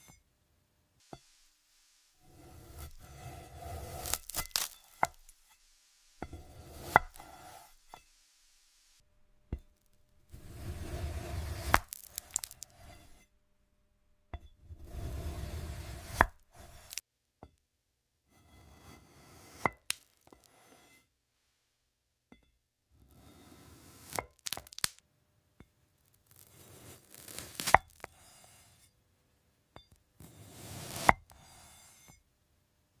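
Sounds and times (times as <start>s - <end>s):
strawberries being crunched: 3.8s - 5.5s, 11.6s - 12.7s, 24.3s - 25.0s.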